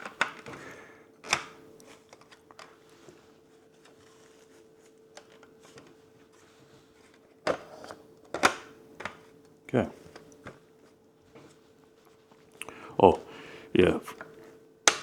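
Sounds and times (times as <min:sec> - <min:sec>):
plastic parts clicking and tapping: 0:00.0 - 0:00.6, 0:07.4 - 0:09.2.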